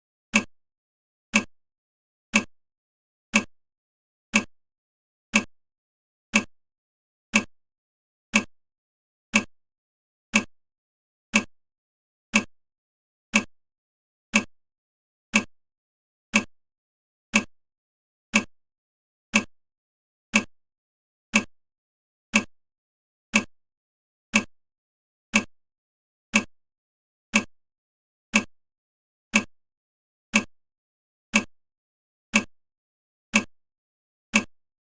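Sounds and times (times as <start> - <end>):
clock ticking: 0.3 - 0.5, 1.3 - 1.5, 2.3 - 2.5, 3.3 - 3.5, 4.3 - 4.5, 5.3 - 5.5, 6.3 - 6.5, 7.3 - 7.5, 8.3 - 8.5, 9.3 - 9.5, 10.3 - 10.5, 11.3 - 11.5, 12.3 - 12.5, 13.3 - 13.5, 14.3 - 14.5, 15.3 - 15.5, 16.3 - 16.5, 17.3 - 17.5, 18.3 - 18.5, 19.3 - 19.5, 20.3 - 20.5, 21.3 - 21.5, 22.3 - 22.5, 23.3 - 23.5, 24.3 - 24.5, 25.3 - 25.5, 26.3 - 26.5, 27.3 - 27.5, 28.3 - 28.5, 29.3 - 29.5, 30.3 - 30.5, 31.3 - 31.5, 32.3 - 32.5, 33.3 - 33.5, 34.3 - 34.6.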